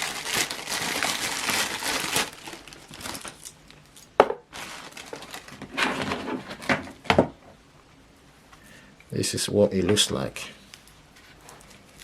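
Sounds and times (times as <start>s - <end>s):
packaging crinkling and rustling: 0.0s - 7.0s.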